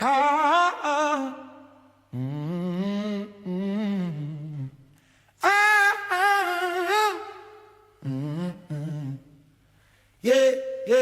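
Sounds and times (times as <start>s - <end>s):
person singing: 0.0s - 9.4s.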